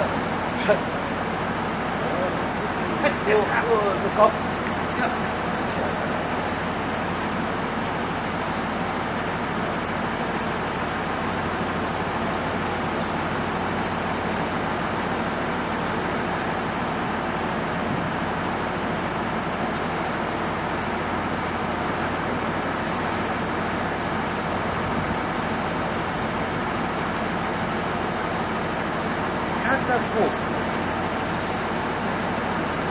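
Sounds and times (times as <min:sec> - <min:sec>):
steady engine noise: 0:00.0 - 0:32.9.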